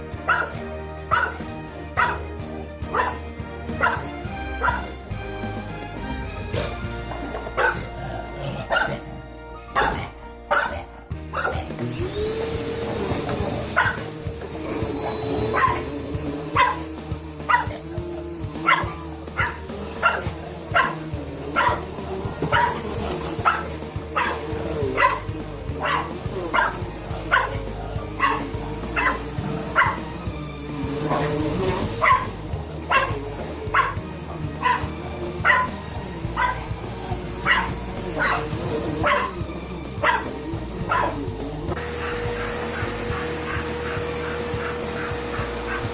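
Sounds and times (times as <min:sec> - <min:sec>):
vacuum cleaner whining: 0:00.0 - 0:45.9
dog barking: 0:00.2 - 0:05.0, 0:07.5 - 0:11.8, 0:13.6 - 0:14.1, 0:15.0 - 0:17.9, 0:18.6 - 0:30.2, 0:31.0 - 0:34.0, 0:34.6 - 0:36.7, 0:37.4 - 0:39.4, 0:40.0 - 0:41.2, 0:41.8 - 0:45.9.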